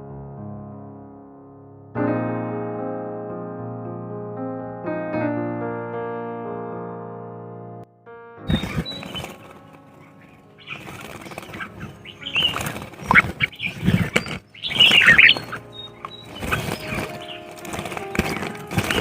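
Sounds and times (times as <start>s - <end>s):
birds chirping: 8.5s - 19.0s
birds flapping wings: 8.5s - 19.0s.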